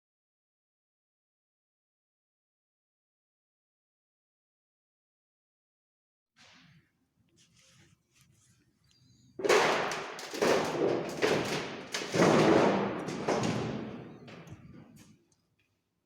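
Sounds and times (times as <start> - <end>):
heavy thuds and bangs: 9.4 - 15.0.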